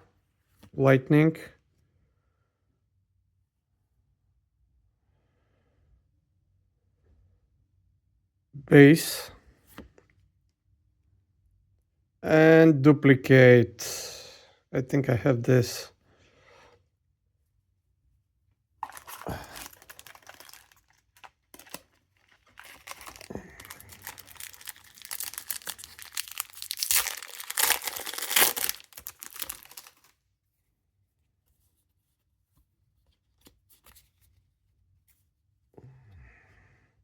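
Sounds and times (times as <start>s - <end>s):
foil wrapper tearing and crinkling: 18.8s - 30.1s.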